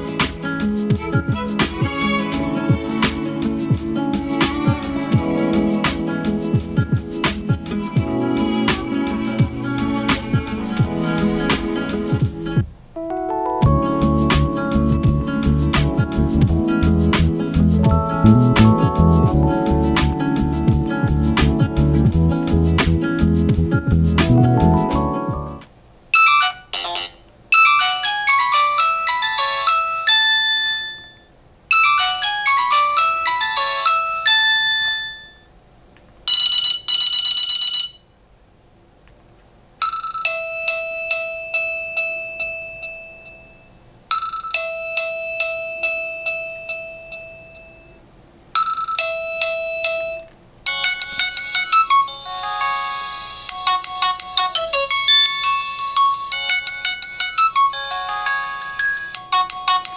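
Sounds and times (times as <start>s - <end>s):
phone ringtone melodies: 13.0s - 23.0s, 26.2s - 35.5s, 36.3s - 38.1s, 39.8s - 48.0s, 48.6s - 59.9s
held chime: 40.1s - 48.0s, 48.6s - 59.9s.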